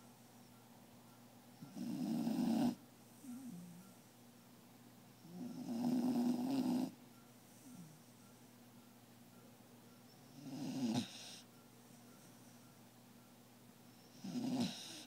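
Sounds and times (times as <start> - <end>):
dog snoring: 1.6 - 4.0, 5.2 - 8.1, 10.3 - 11.5, 14.1 - 15.0.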